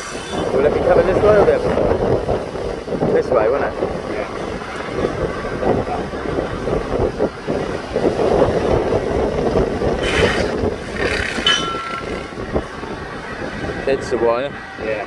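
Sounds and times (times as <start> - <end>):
wind buffeting microphone: 0.0 - 15.0
thin metallic squeal: 11.4 - 12.3.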